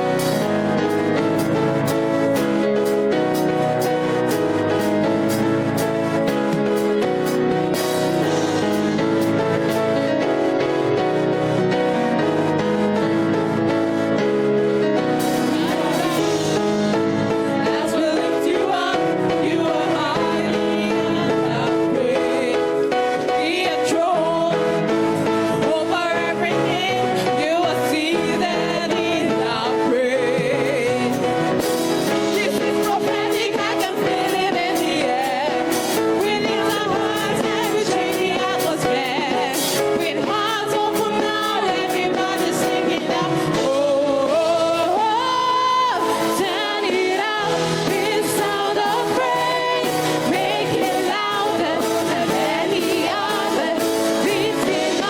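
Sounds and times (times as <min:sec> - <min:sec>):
instrumental accompaniment with beat: 0:00.0 - 0:55.0
person singing lead: 0:15.3 - 0:24.8, 0:32.2 - 0:55.0.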